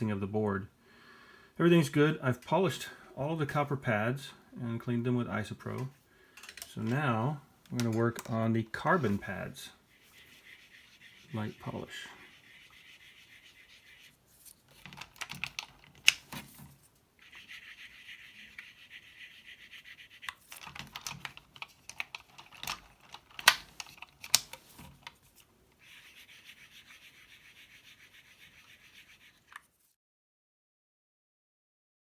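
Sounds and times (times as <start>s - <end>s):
fine scratching of polishing stick: 8.8s - 15.0s, 16.3s - 20.8s, 24.6s - 30.0s
keyboard parts clicking and knocking: 14.7s - 16.8s, 20.3s - 25.2s.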